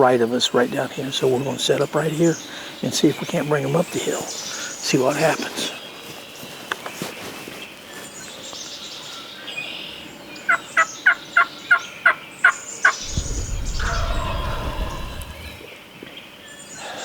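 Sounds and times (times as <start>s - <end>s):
turkey gobble: 13.0s - 15.6s.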